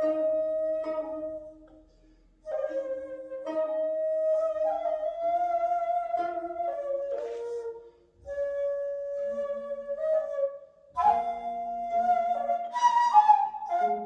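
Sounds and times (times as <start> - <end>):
bamboo flute long notes: 0.0 - 1.8, 2.4 - 14.0
quiet lower accompaniment: 0.0 - 14.0.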